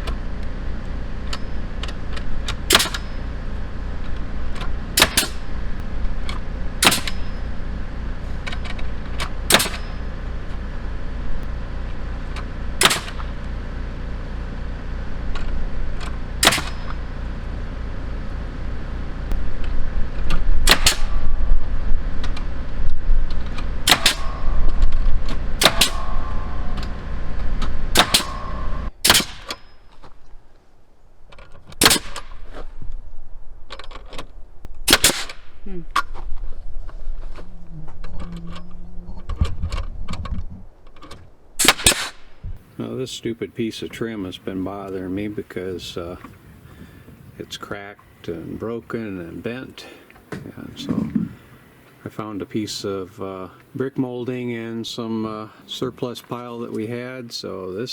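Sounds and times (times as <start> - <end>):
generator droning: 0.0 - 57.9
nail gun shots: 2.5 - 3.2, 4.6 - 5.6, 6.8 - 7.4, 8.4 - 10.0, 12.8 - 13.4, 16.0 - 17.0, 20.6 - 21.3, 23.8 - 24.6, 25.6 - 26.9, 27.9 - 29.7, 31.7 - 32.6, 34.8 - 35.6, 41.6 - 42.3.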